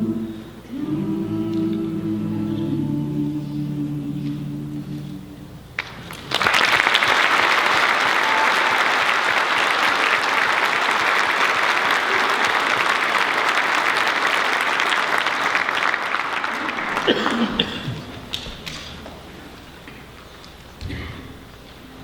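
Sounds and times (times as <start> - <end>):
audience applause: 5.8 - 18.4.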